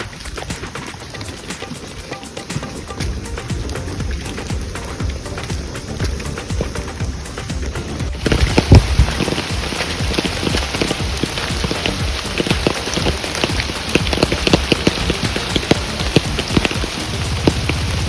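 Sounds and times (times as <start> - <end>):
raindrops striking near microphone: 0.0 - 18.0.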